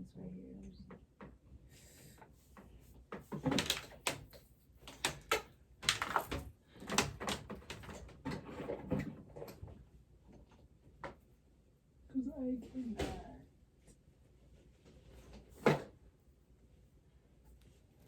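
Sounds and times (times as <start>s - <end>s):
household objects knocking and clicking: 3.2s - 9.1s.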